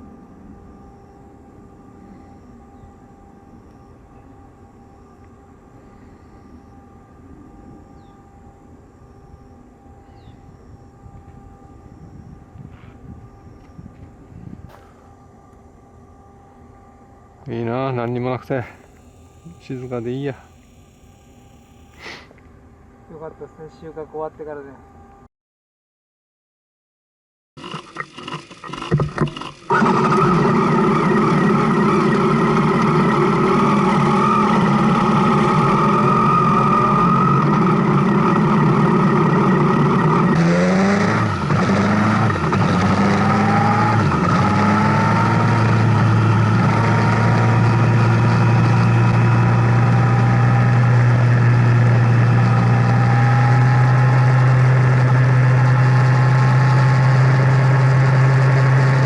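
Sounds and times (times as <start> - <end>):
motorcycle engine running: 27.6 - 59.0.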